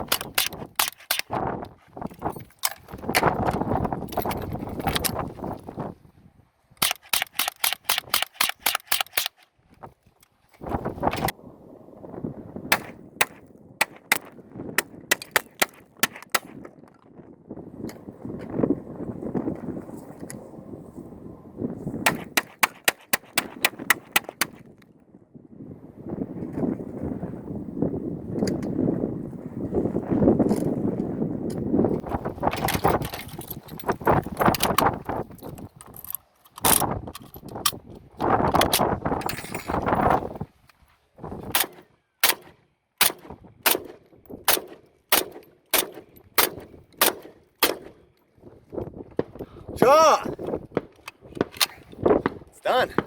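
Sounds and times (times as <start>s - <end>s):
rifle metallic clicking and rattling: 0.0s - 5.6s, 6.8s - 10.4s, 12.8s - 17.0s, 22.1s - 24.8s, 32.0s - 40.1s, 41.5s - 49.4s, 50.8s - 52.3s
rifle shots: 6.8s - 9.4s, 12.7s - 16.6s, 41.5s - 48.0s.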